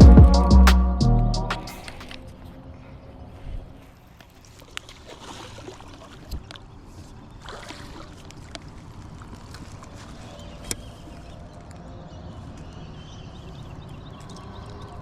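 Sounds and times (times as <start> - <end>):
water sloshing: 3.9 - 15.0.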